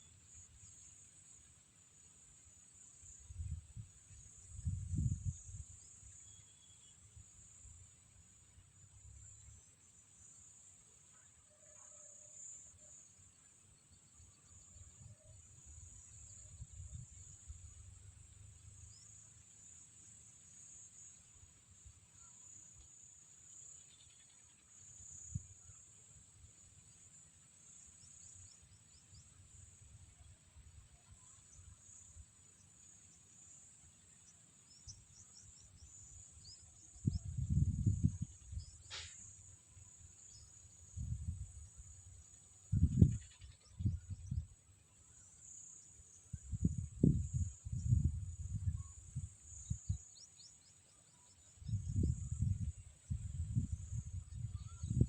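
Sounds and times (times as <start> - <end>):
insect buzz: 0.0 - 55.0.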